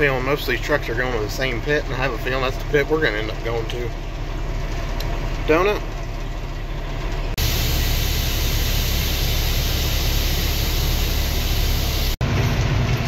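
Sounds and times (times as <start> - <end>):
truck engine droning: 0.0 - 13.0
loud hiss: 7.4 - 12.2.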